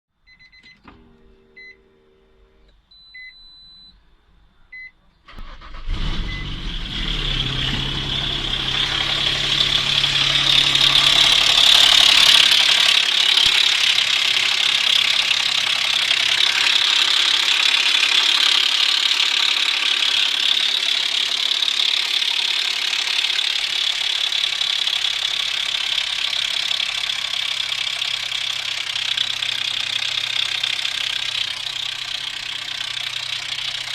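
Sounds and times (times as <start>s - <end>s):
car engine running with knock: 7.4s - 33.9s.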